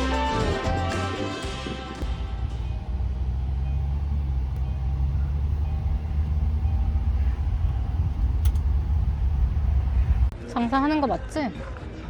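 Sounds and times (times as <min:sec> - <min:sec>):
car rumble from inside: 0:02.0 - 0:10.3.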